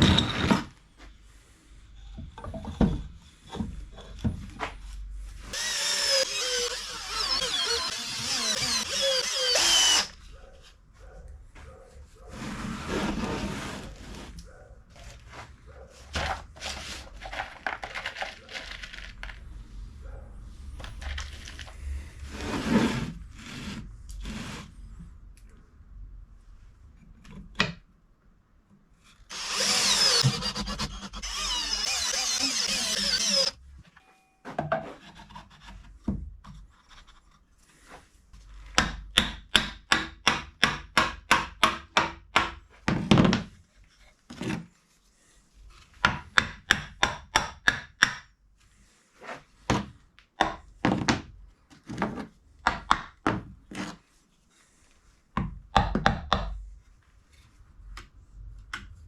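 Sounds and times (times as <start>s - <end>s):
tool rasping on wood: 5.4s - 10.2s, 29.3s - 33.6s.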